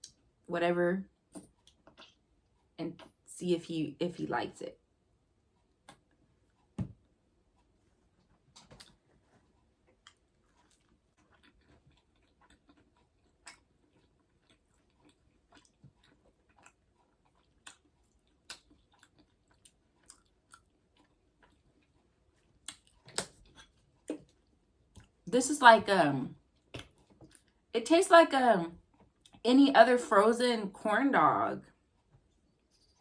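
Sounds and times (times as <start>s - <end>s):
person chewing food: 1.3s - 3.2s, 5.6s - 25.3s, 26.4s - 27.7s, 28.8s - 29.4s, 31.7s - 33.0s.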